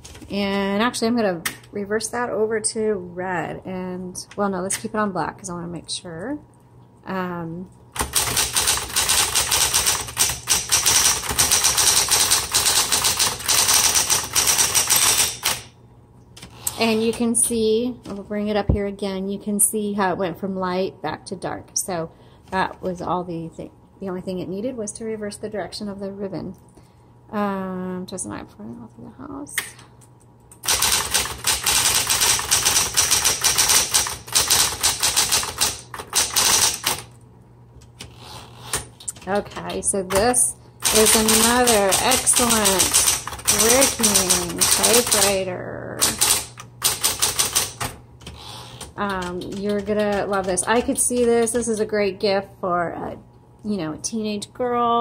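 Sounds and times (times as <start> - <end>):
typewriter motor running: 8.0 - 15.7, 30.6 - 37.2, 37.9 - 45.4, 46.0 - 51.3
electric typewriter typing: 8.0 - 15.8, 30.5 - 37.2, 37.8 - 51.8.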